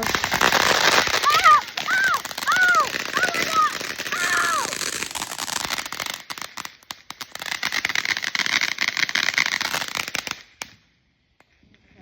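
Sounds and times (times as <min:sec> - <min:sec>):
firework hissing spray: 0:00.0 - 0:06.3
firework crackling pops: 0:00.0 - 0:11.6.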